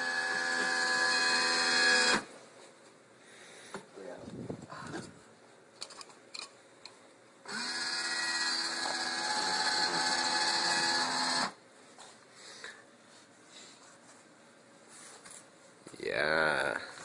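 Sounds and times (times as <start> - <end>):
vending machine motor whirring: 0.0 - 2.3, 7.4 - 11.6.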